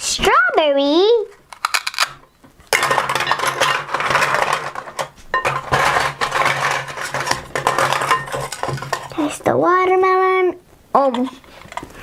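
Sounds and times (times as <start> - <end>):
plastic toy pieces clattering: 1.5 - 9.3.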